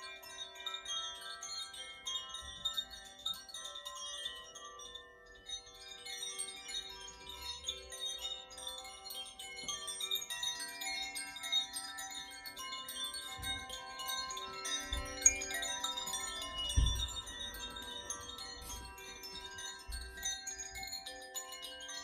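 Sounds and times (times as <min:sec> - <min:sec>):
wind chimes tinkling: 0:00.0 - 0:22.0
soft low thumps: 0:16.6 - 0:17.6.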